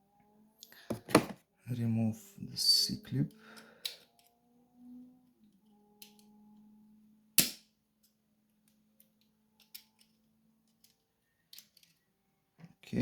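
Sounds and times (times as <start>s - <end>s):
sharp metallic snap: 7.4s - 7.6s.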